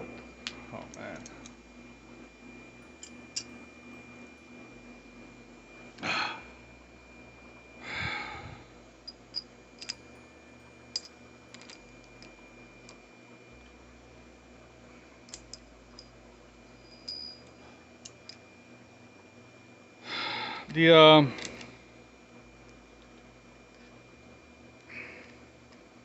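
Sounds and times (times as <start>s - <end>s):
person sighing: 6.0s - 6.5s.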